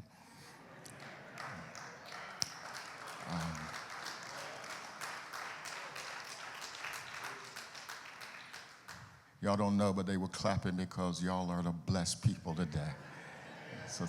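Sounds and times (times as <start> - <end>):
congregation clapping: 0.8 - 9.3.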